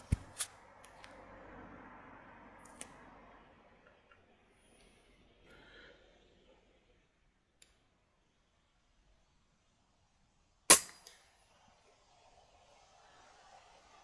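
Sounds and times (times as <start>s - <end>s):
air rifle shot: 10.7s - 11.0s.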